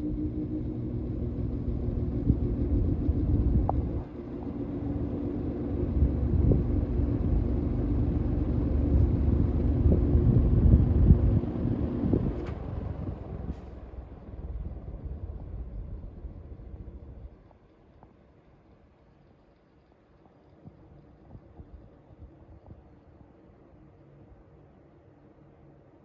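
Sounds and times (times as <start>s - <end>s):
fan motor hum: 0.0s - 26.0s
air buffeting microphone: 0.8s - 17.5s.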